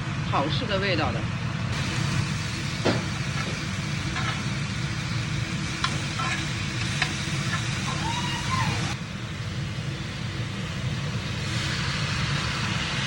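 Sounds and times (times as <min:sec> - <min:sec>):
steady low hum: 0:00.0 - 0:13.0
meat sizzling in a pan: 0:01.8 - 0:13.0.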